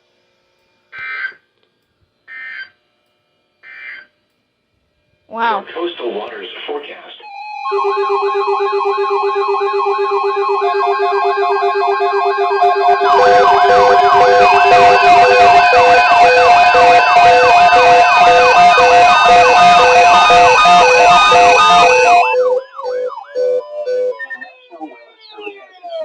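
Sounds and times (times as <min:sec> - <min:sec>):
electronic siren wail: 0:03.6 - 0:04.1, 0:07.2 - 0:26.0
steady alarm tones: 0:05.5 - 0:26.0.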